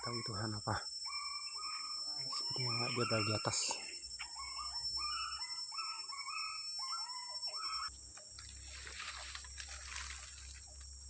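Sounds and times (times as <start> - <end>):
animal calls overhead: 0.0 - 7.9.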